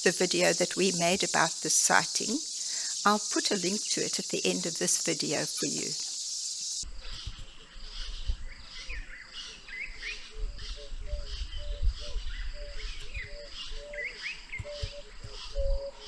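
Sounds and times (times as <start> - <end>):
birds chirping: 0.0 - 16.0
low hooting bird calls: 6.7 - 16.0
wind rumble on microphone: 6.9 - 9.2, 9.8 - 16.0.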